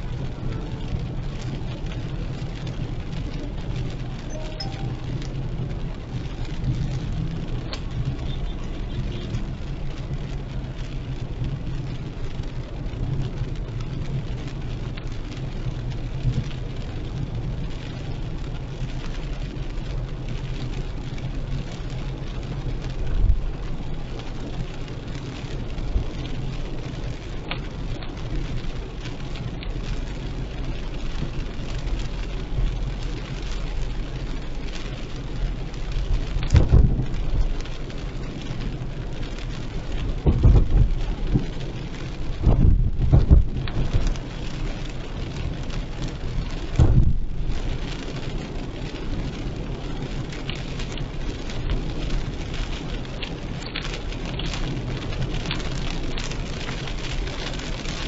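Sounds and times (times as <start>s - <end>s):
engine and tyres humming on wet road: 0.0s - 58.0s
rain hitting a car: 0.0s - 58.0s
low thump: 40.2s - 40.9s, 42.5s - 43.6s.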